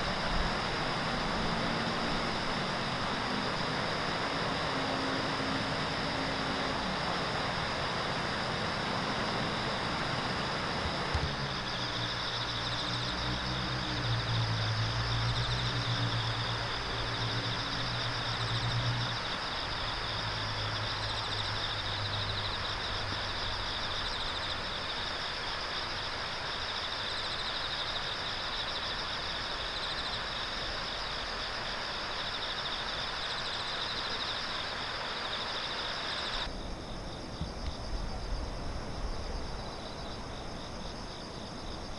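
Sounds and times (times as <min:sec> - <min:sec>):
passing vehicle engine hum: 0:00.0 - 0:23.7
high insect trill: 0:00.0 - 0:41.9
steady rush of river noise: 0:00.0 - 0:41.9.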